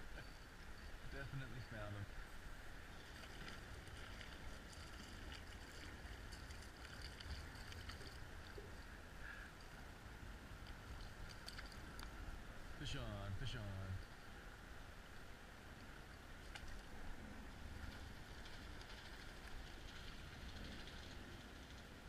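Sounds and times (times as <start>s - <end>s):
wind rumble on microphone: 16.8s - 22.0s.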